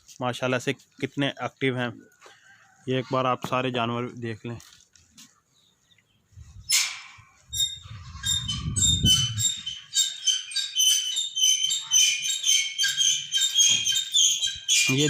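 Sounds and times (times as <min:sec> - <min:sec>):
birds chirping: 0:07.5 - 0:15.0.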